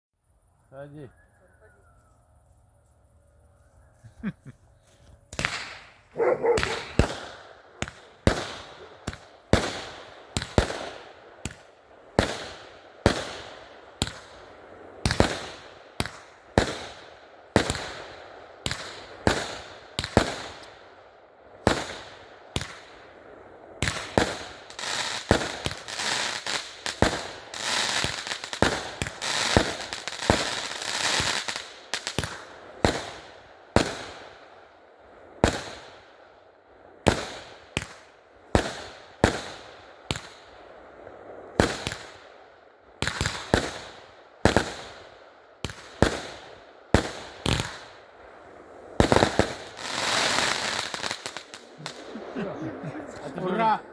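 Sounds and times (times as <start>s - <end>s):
fireworks cake shots crackling: 5.3s - 13.4s, 23.8s - 34.2s, 49.0s - 53.9s.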